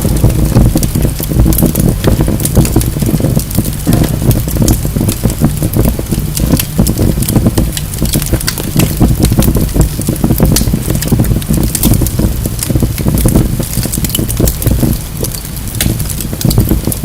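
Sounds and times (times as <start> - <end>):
fire roaring: 0.0 - 17.0
logs crackling and popping: 0.0 - 17.0.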